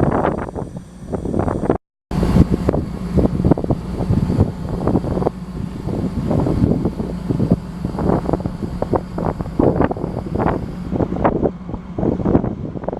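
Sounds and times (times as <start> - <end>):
combine harvester engine humming: 0.0 - 12.9
wind buffeting microphone: 0.0 - 12.9.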